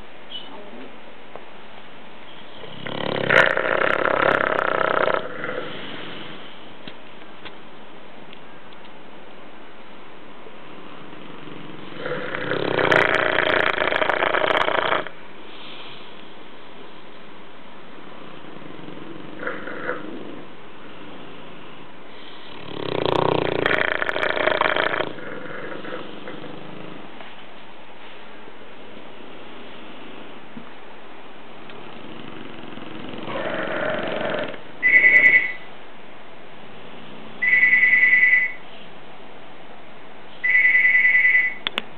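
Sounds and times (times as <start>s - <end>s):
dog snoring: 2.6s - 6.5s, 10.7s - 15.2s, 18.1s - 27.2s, 31.8s - 35.4s
telephone ringing: 37.4s - 38.6s, 40.4s - 41.6s.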